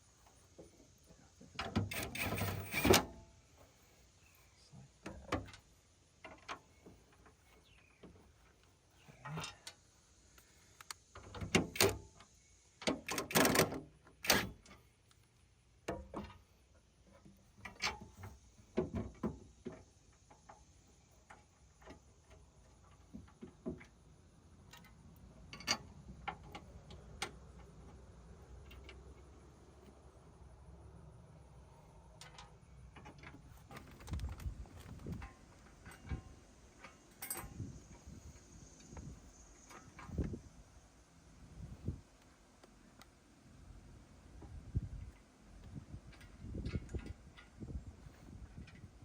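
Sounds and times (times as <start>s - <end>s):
metal hardware and tools clinking: 35.2s - 37.7s.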